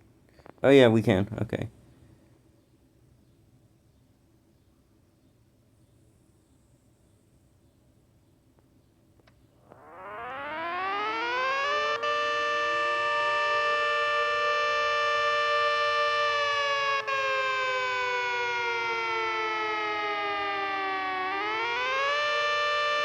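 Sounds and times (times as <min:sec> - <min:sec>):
two-tone electromechanical siren: 0:09.6 - 0:23.0.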